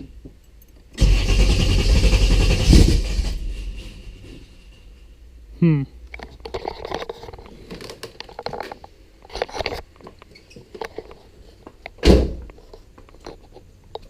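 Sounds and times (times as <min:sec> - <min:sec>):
heavy low thump: 0:01.3 - 0:05.0.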